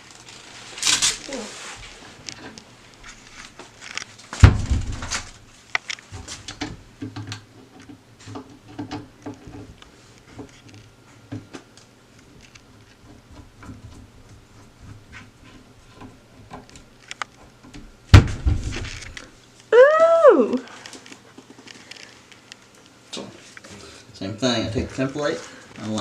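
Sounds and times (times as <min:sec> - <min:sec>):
heavy thump: 0:04.4 - 0:05.2, 0:18.1 - 0:18.9.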